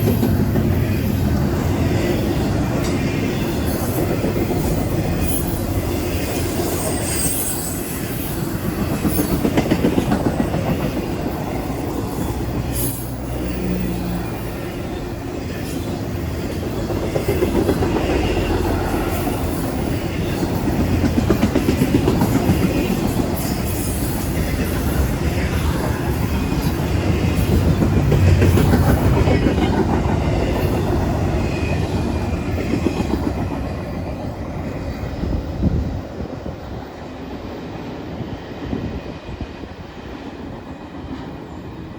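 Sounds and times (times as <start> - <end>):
clickety-clack over rail joints: 0.0 - 41.9
train wheels rumbling on rails: 0.0 - 41.9
wheel squeal: 5.2 - 8.3.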